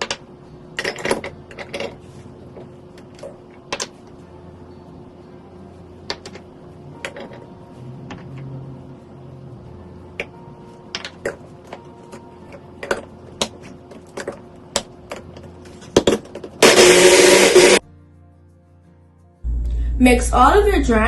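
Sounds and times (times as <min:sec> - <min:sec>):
faint steady hum: 0:19.5 - 0:21.0.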